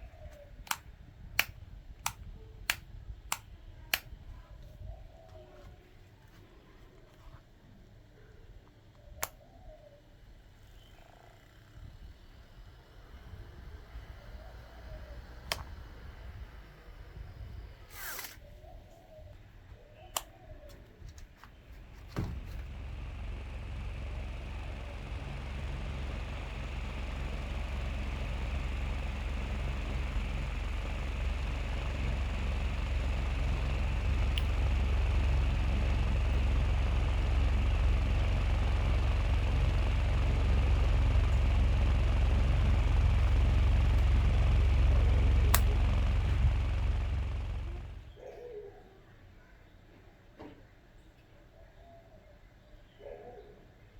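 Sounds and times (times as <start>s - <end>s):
fan clicks: 0.0s - 6.4s, 8.7s - 9.5s, 13.2s - 18.6s, 20.0s - 48.2s
small fan running: 0.0s - 48.3s.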